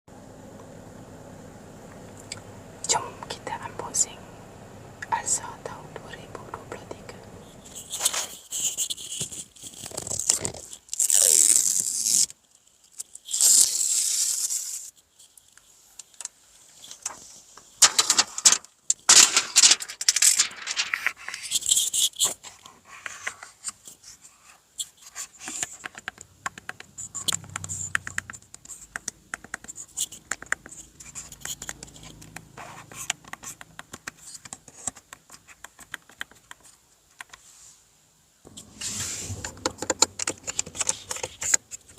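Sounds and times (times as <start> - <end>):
small clicks and rattles: 9.0 - 24.0, 24.8 - 37.4, 39.3 - 41.9
plastic wrapping tearing: 9.4 - 15.0, 17.8 - 22.3.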